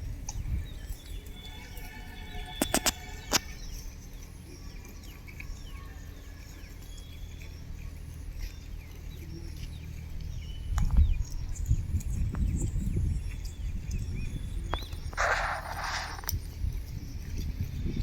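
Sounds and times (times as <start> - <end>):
steady low rumble: 0.0 - 4.8, 6.0 - 18.0.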